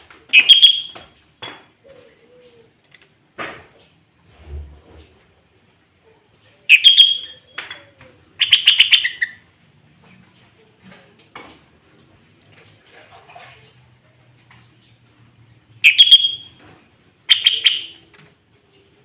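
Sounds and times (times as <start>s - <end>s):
bulbul singing: 0.3s - 1.1s, 6.7s - 9.4s, 15.8s - 16.7s, 17.3s - 18.1s
faint bird chirps: 6.0s - 9.4s, 15.8s - 16.6s, 17.3s - 19.0s.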